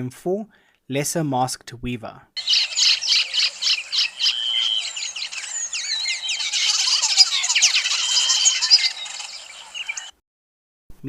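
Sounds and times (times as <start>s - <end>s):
weaver bird chattering song: 2.4s - 10.1s.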